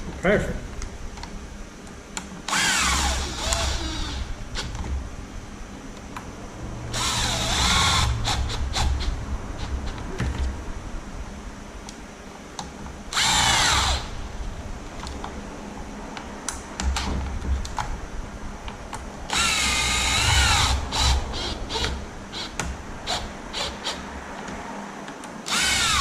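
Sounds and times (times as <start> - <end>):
cordless drill driving bolts: 2.5 - 4.8, 6.9 - 9.7, 13.1 - 14.2, 19.3 - 24.0, 25.5 - 26.0.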